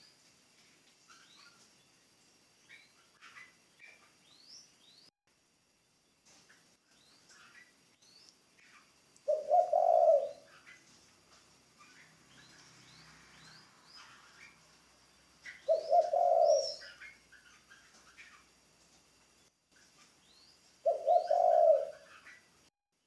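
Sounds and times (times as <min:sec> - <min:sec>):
small birds chirping faintly: 0:00.0 - 0:23.0
dove cooing: 0:09.2 - 0:11.0, 0:15.4 - 0:18.4, 0:20.8 - 0:22.4.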